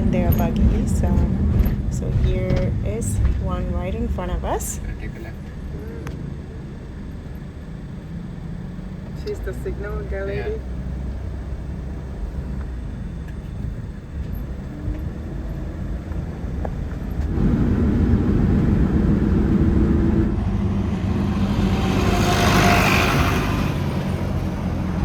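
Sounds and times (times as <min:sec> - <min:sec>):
car engine and road noise: 0:00.0 - 0:25.0
rushing noise: 0:17.3 - 0:25.0.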